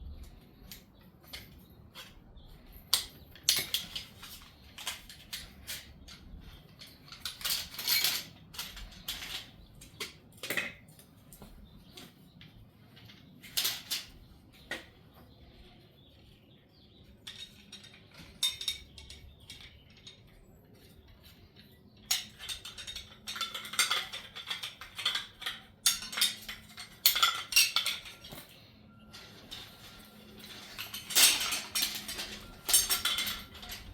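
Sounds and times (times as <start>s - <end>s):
plastic segments clattering: 2.9s - 11.1s, 22.0s - 33.9s.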